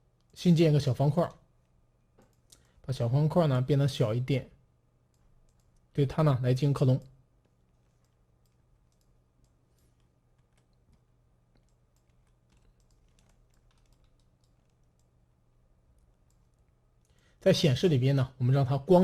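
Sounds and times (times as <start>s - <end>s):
steady low hum: 0.0s - 19.0s
computer mouse and keyboard clicks: 7.4s - 15.2s, 15.9s - 17.2s.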